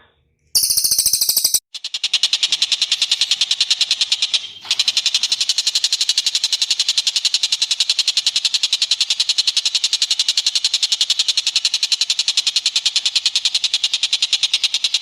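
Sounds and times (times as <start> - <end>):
bird trilling high notes: 0.6 - 1.6.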